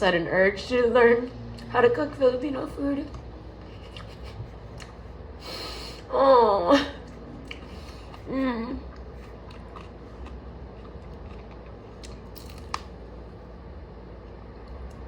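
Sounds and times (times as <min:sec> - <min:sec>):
soft chewing: 0:03.0 - 0:05.2, 0:07.0 - 0:13.4.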